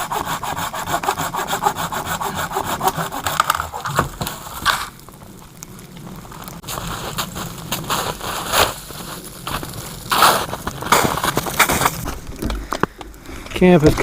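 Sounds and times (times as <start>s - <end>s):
hand saw cutting wood: 0.0s - 4.1s.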